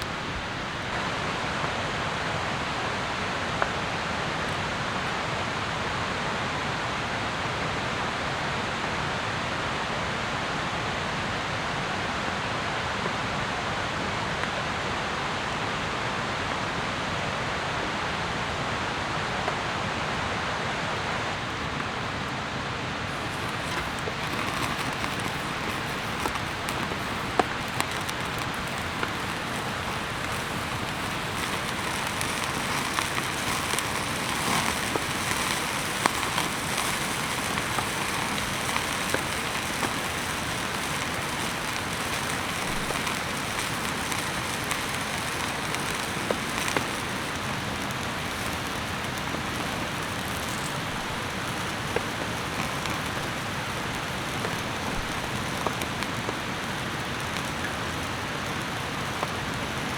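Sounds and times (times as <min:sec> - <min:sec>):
steady rain falling: 0:00.0 - 0:12.9, 0:21.2 - 0:59.9
raindrops ticking: 0:23.1 - 0:59.9.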